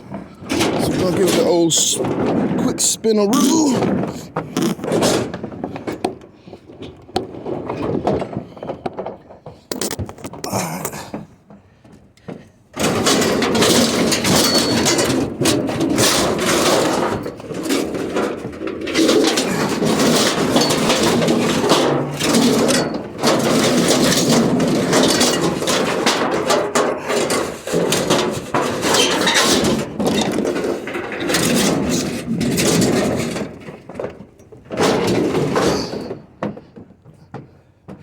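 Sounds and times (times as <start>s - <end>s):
refrigerator scraping on floor: 12.8s - 36.2s.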